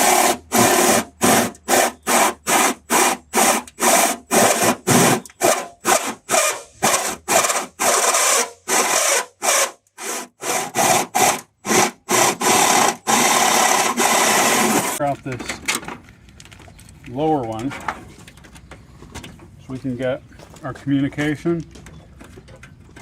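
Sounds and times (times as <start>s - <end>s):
hand tool scraping strokes: 0.0s - 15.0s.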